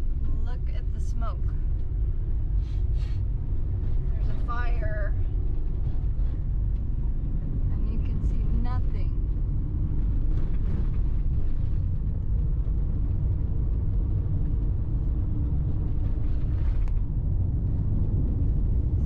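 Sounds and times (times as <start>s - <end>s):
vehicle interior road rumble: 0.0s - 19.0s.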